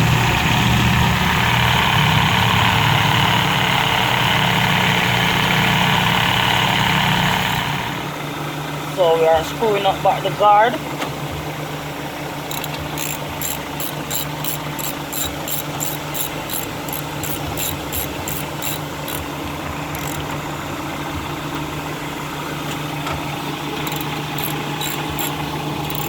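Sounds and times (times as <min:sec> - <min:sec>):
car engine idling: 0:08.0 - 0:26.0
ratchet clicking: 0:12.5 - 0:19.3, 0:19.9 - 0:20.3, 0:23.8 - 0:26.0.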